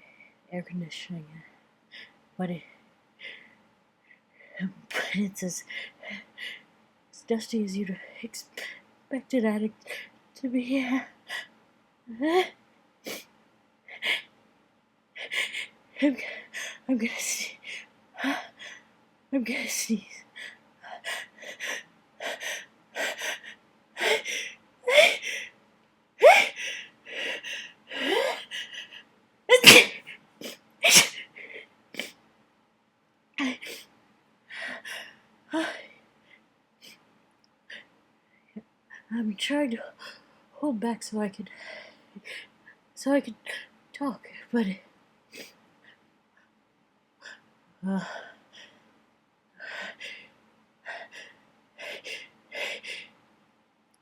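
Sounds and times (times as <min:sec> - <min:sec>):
person sneezing: 0:29.5 - 0:31.3.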